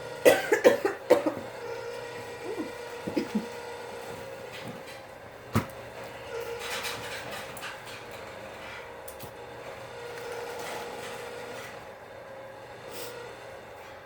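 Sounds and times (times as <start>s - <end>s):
steady hum: 0.0s - 6.9s.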